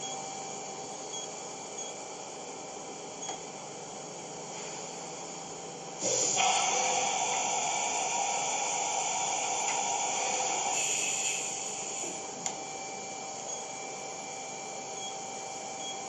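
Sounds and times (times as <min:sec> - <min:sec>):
loud air hiss: 0:06.0 - 0:12.2.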